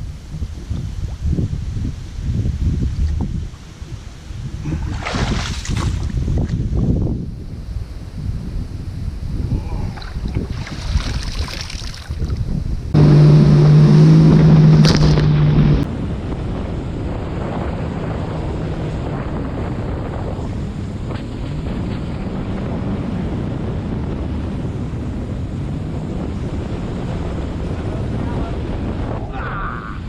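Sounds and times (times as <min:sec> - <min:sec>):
wind buffeting microphone: 0:00.0 - 0:30.0
water rushing: 0:09.7 - 0:15.9
jet ski engine running: 0:12.9 - 0:29.2.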